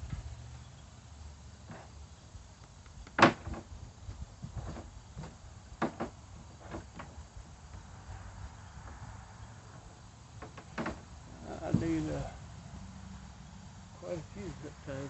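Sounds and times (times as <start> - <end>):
handling knocks and clicks: 4.4 - 7.2, 10.4 - 12.3.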